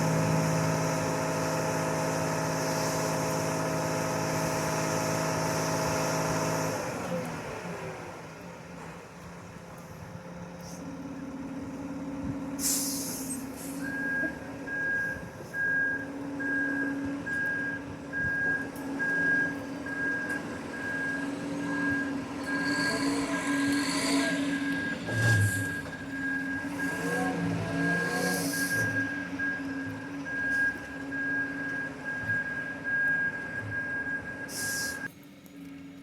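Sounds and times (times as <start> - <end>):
reversing alarm beeping: 13.8 - 35.1
truck engine running: 13.8 - 36.0.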